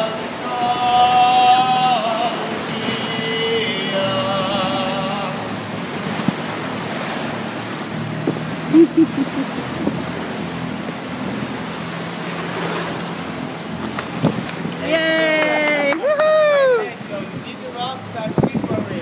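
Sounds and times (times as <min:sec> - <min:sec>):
low boat engine hum: 0:00.0 - 0:19.0
water wash: 0:00.0 - 0:19.0
wind noise: 0:08.2 - 0:11.5, 0:13.4 - 0:15.2, 0:16.4 - 0:19.0.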